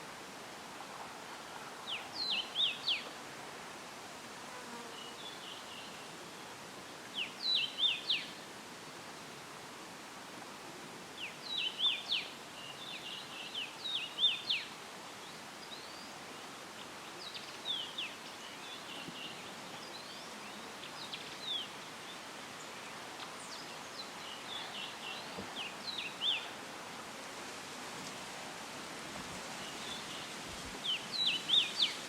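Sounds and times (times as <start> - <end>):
leaves rustling in breeze: 0.0 - 32.0
songbirds chirping: 1.8 - 3.2, 4.9 - 9.3, 11.1 - 27.0, 29.4 - 32.0.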